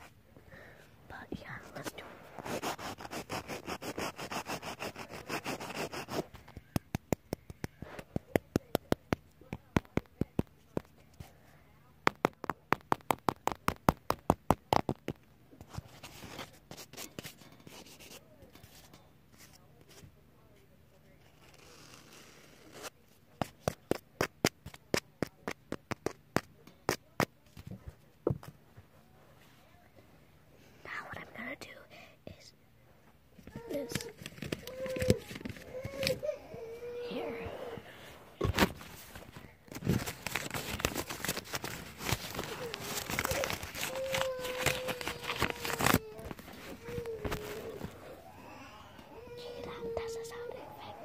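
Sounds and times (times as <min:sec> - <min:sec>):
rustling scratchy noise: 0:38.2 - 0:48.2.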